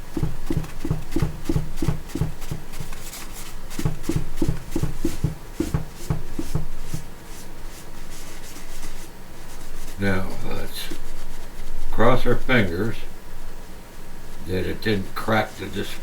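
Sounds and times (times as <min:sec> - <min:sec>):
cloth scrubbing on glass: 0:00.0 - 0:12.7.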